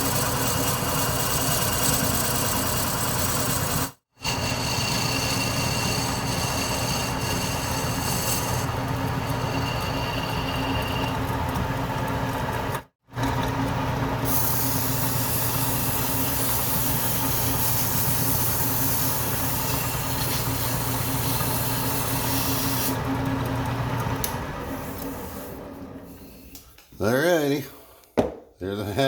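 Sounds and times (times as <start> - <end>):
metal lathe running: 0.0 - 12.1, 14.2 - 26.0
hiss of cutting at spindle: 14.3 - 23.0.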